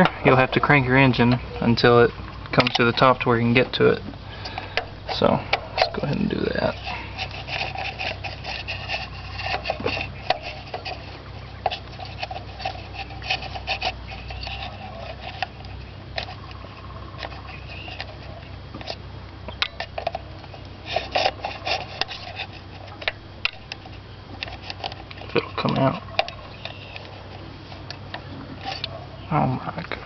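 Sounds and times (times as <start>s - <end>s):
faint low hum: 0.0s - 30.0s
metal tools scraping and clicking: 4.4s - 16.5s, 19.6s - 29.0s.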